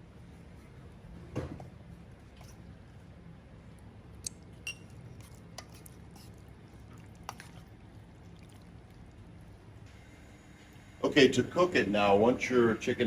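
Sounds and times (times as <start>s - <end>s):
low steady hum: 0.0s - 13.0s
wet squishing of meat: 3.7s - 9.6s.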